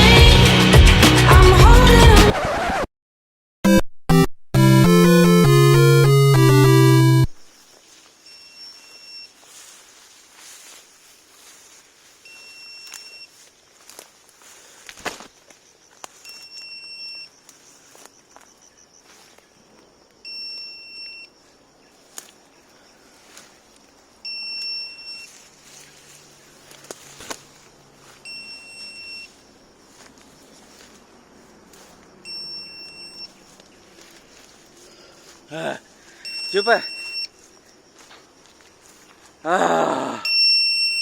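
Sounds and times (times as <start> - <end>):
high electronic beep: 32.3 - 33.3, 36.2 - 37.3.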